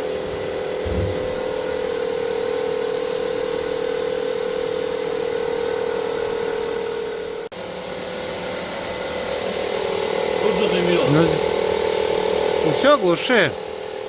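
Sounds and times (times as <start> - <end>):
smoke machine pump hissing and humming: 0.0 - 14.0.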